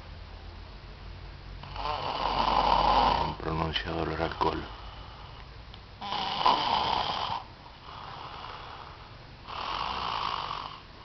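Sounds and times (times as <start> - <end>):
man snoring: 1.6 - 3.5, 6.0 - 10.9.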